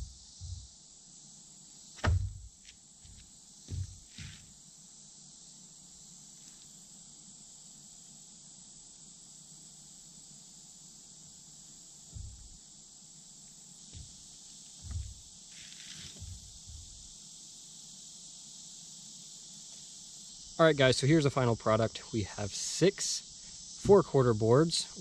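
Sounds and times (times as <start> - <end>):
soft low thumps: 0.0 - 0.7, 2.0 - 2.5, 3.7 - 4.4, 12.1 - 12.6, 14.0 - 14.2, 14.8 - 15.3, 16.1 - 17.1
high-pitched insect chorus: 0.0 - 25.0.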